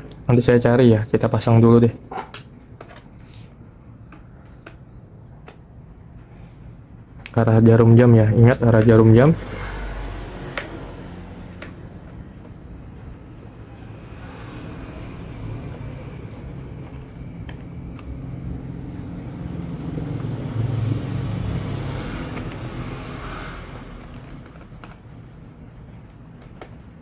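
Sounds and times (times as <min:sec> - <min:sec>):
motor vehicle passing by: 0:08.1 - 0:25.4.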